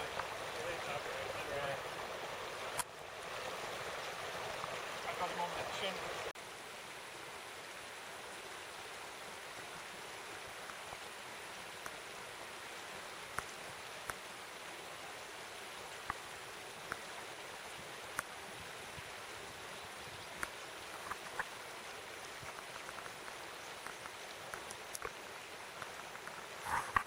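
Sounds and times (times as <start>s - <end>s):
shallow stream running: 0.0s - 27.0s
small sharp ticks: 18.1s - 18.3s, 20.3s - 27.0s.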